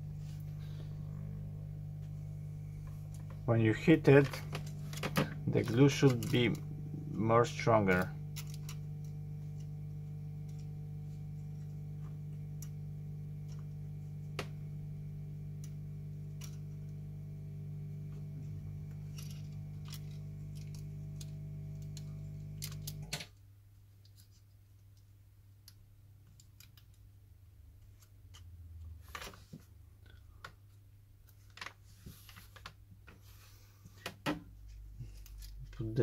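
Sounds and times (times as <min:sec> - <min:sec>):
hair dryer humming: 0:00.0 - 0:23.0.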